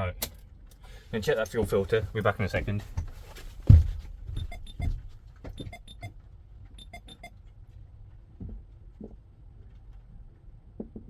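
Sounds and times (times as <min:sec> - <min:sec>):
heavy thump: 0:01.5 - 0:05.1.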